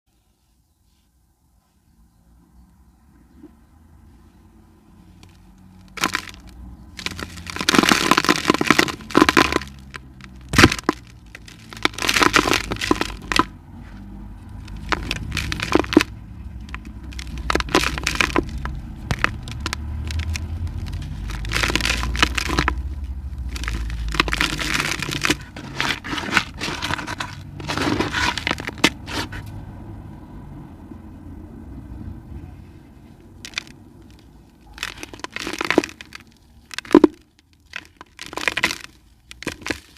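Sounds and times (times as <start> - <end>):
cement lumps crunching: 5.1 - 29.5, 33.4 - 39.9.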